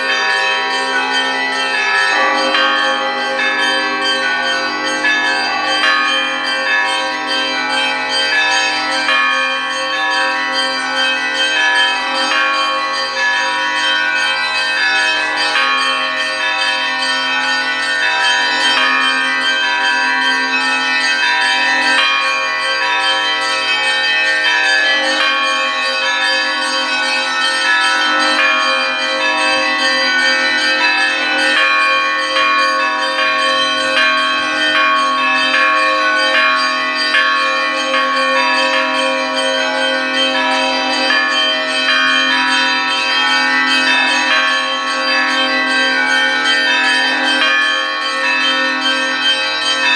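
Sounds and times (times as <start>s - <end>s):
church bells ringing: 0.0s - 49.9s.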